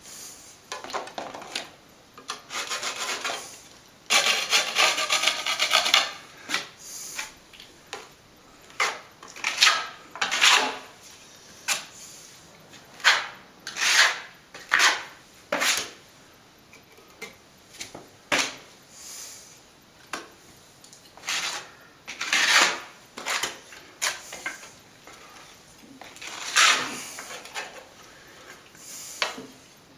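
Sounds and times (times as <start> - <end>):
plastering blade scraping cement: 2.3 - 7.3, 8.7 - 10.9, 12.9 - 16.0, 21.2 - 25.4, 26.0 - 27.9.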